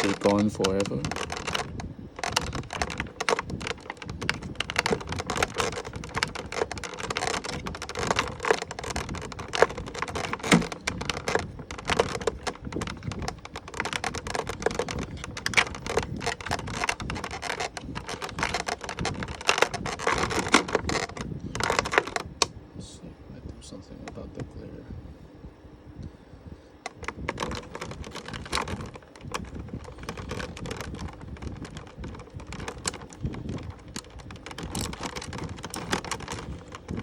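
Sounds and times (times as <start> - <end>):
plastic packaging crinkling: 0.0 - 22.5, 26.8 - 37.0.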